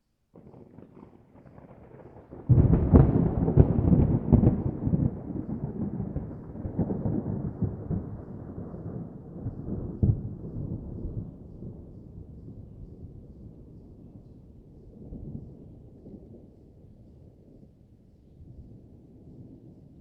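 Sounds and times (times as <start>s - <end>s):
thunder cracks: 0.4s - 11.8s
distant thunder rumble: 0.4s - 13.3s.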